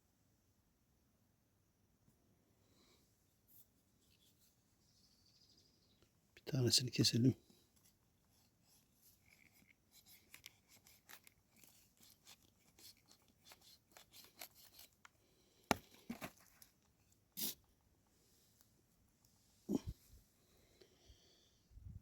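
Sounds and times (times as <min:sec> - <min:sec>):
crisp snipping and scraping: 0:07.8 - 0:17.6.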